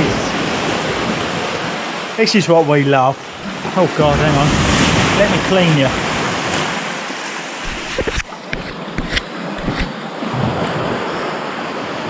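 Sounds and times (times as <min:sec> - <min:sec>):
camera handling knocks: 0:07.7 - 0:09.9.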